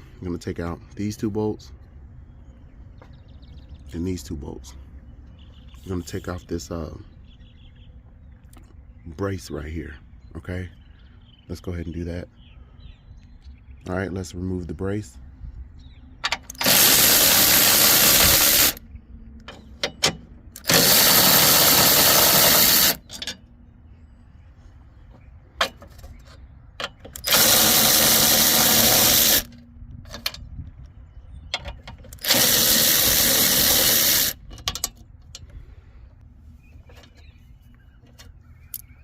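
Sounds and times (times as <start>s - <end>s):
cordless power tool spinning bolts: 16.3s - 18.8s, 19.8s - 23.4s, 26.8s - 30.4s, 31.6s - 34.9s.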